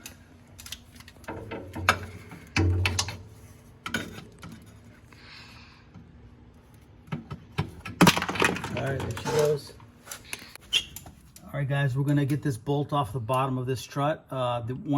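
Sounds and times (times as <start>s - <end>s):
rattling handling of plastic parts: 7.1s - 10.4s.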